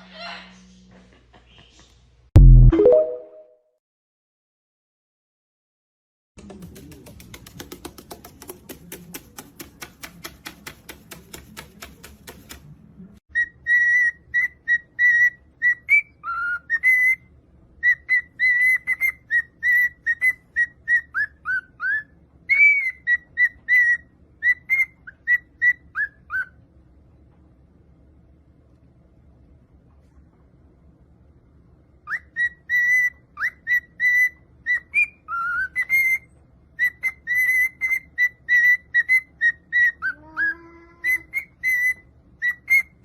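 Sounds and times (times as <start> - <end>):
fast even clicks: 6.6 - 12.6
pet bird whistling: 13.4 - 26.6, 32.0 - 43.0.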